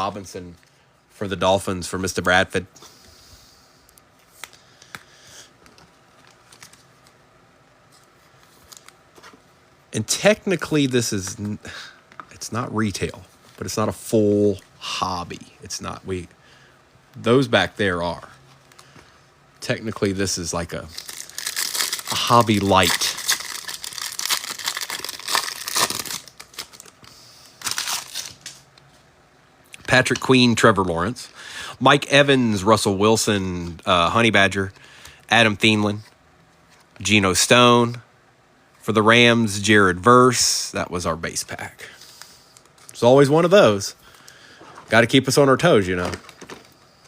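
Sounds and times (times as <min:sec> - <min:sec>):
cards and wrappers rustling: 0:04.2 - 0:07.2, 0:07.9 - 0:09.5, 0:19.8 - 0:29.0, 0:44.0 - 0:46.9.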